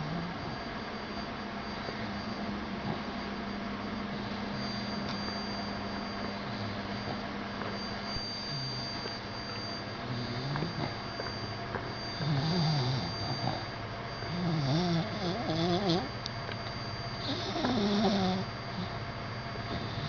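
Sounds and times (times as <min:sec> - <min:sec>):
dog snoring: 0:00.0 - 0:00.6, 0:10.0 - 0:11.0, 0:12.1 - 0:16.2, 0:17.2 - 0:19.0, 0:19.7 - 0:20.0
steady hum and hiss: 0:00.0 - 0:20.0.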